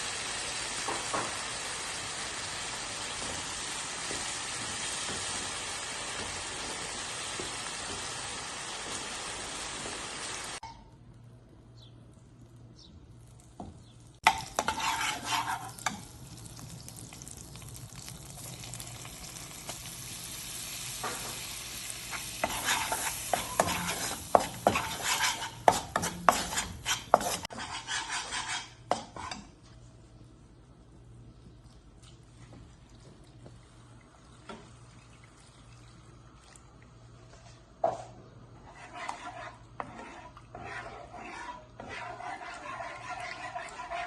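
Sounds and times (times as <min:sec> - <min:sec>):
food sizzling: 0:00.0 - 0:10.6, 0:14.2 - 0:27.5
spoon scraping food in pan: 0:14.3 - 0:16.1, 0:22.1 - 0:29.6, 0:37.4 - 0:44.0.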